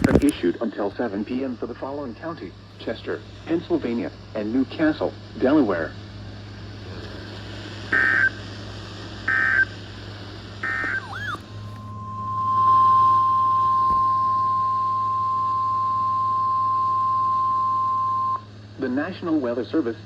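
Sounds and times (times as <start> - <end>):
electronic squawks: 8.0 - 8.4, 9.3 - 9.7, 10.6 - 14.2
steady alert tone: 10.9 - 11.7.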